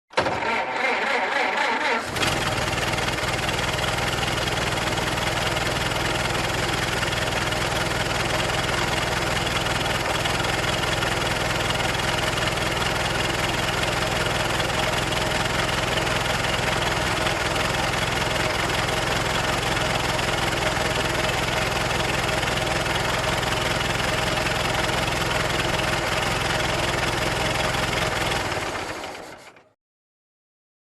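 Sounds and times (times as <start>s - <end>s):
car engine cranking: 0.1s - 5.0s
car engine idling: 2.0s - 29.1s.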